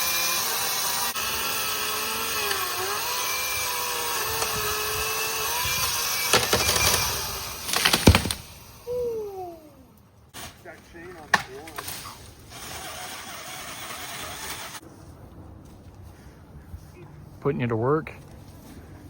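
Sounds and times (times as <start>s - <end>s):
chainsaw cutting branch: 0.0s - 8.8s, 10.4s - 14.8s
wood cracking: 0.1s - 8.8s, 10.4s - 14.8s.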